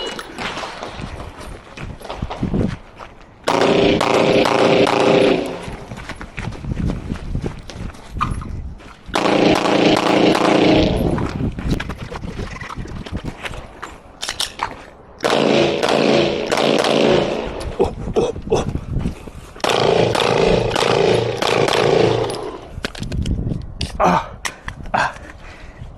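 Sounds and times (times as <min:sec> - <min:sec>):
single gunshots: 0:03.5 - 0:05.7, 0:09.2 - 0:11.2, 0:15.2 - 0:17.6, 0:19.6 - 0:22.6
automatic gunfire bursts: 0:03.5 - 0:05.9, 0:09.2 - 0:11.3, 0:15.2 - 0:17.6, 0:19.6 - 0:22.7.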